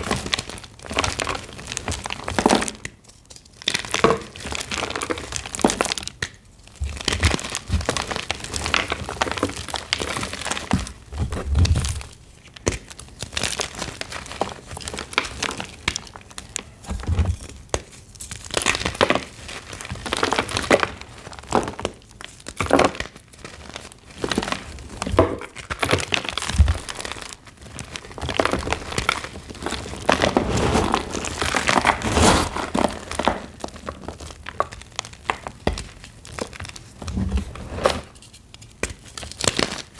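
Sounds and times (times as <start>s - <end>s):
chalk blocks crunching: 17.8s - 39.9s.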